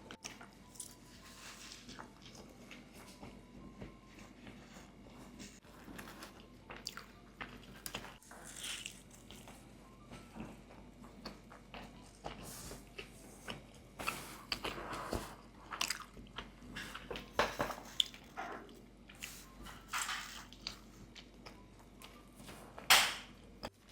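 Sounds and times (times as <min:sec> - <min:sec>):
biting and chewing cake: 0:00.1 - 0:09.7.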